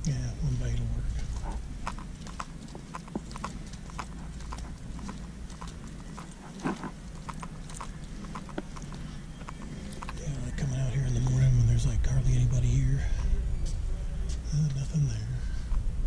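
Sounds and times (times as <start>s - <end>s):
low steady hum: 0.0s - 16.0s
footsteps clicking: 0.4s - 11.7s.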